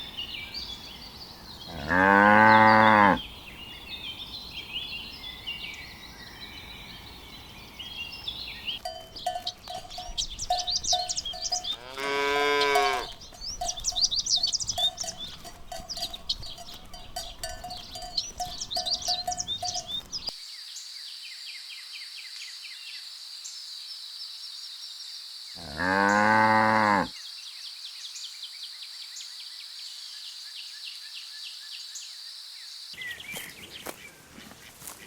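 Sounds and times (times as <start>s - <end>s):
cow mooing: 1.7s - 3.2s, 8.9s - 20.2s, 25.6s - 27.1s.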